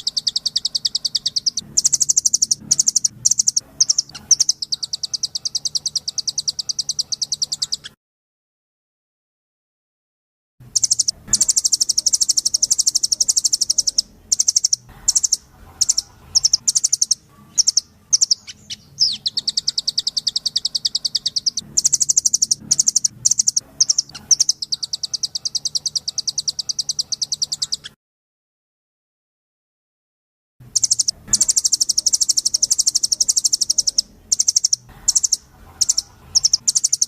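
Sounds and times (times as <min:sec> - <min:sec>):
songbird trilling chirps: 0:00.0 - 0:08.0, 0:10.7 - 0:28.0, 0:30.7 - 0:37.0.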